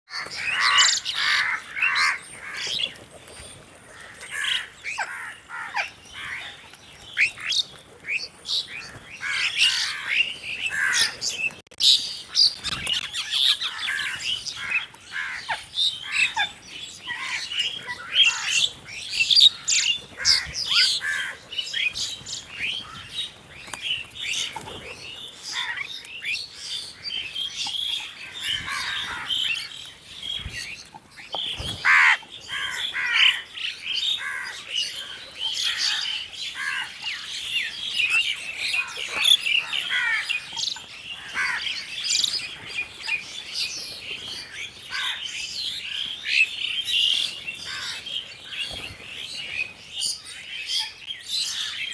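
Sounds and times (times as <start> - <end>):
crows cawing: 0.1 - 2.8, 3.9 - 6.6, 9.2 - 11.2, 13.6 - 16.5, 19.5 - 21.4, 25.5 - 25.9, 28.3 - 29.7, 31.8 - 37.3, 38.7 - 41.8, 44.9 - 45.3, 47.6 - 48.0.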